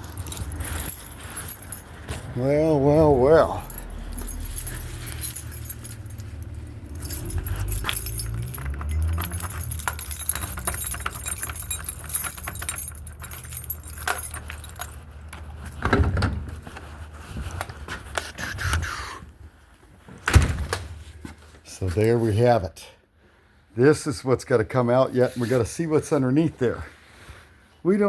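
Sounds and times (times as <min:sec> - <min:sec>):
keys jangling: 0:00.0 - 0:18.7.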